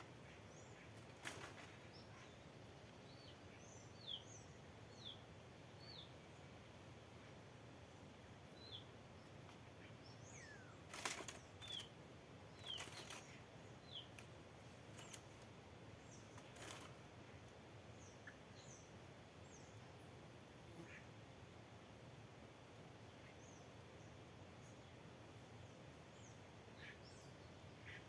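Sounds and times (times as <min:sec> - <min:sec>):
small birds chirping: 0:00.0 - 0:07.4, 0:08.4 - 0:20.2, 0:25.6 - 0:28.0
birds' wings fluttering: 0:00.8 - 0:02.3, 0:10.8 - 0:17.1.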